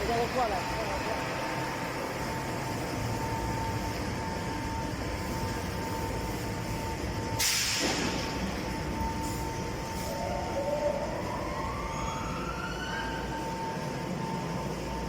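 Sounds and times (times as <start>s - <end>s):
factory machinery whining: 0.0s - 15.0s
compressed air hiss: 7.4s - 8.0s.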